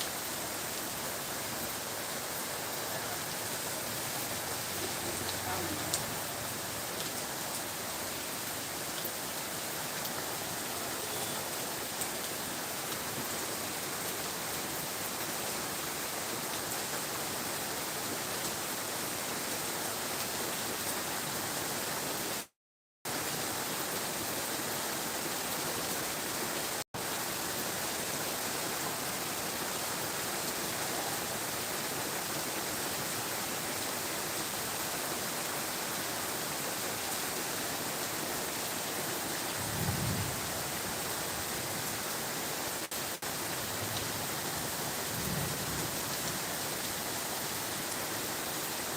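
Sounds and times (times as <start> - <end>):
rain hissing: 0.0 - 16.8.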